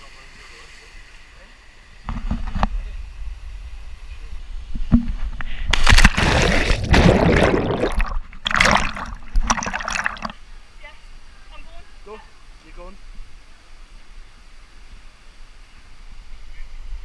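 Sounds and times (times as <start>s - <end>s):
water splashing and churning: 5.7s - 10.4s.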